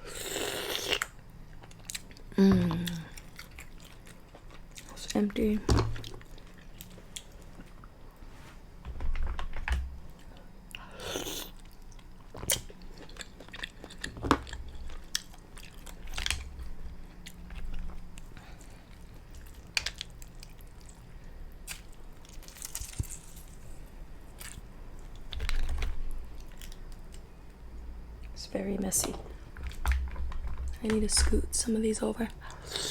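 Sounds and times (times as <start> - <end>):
close chewing: 11.6 - 23.0.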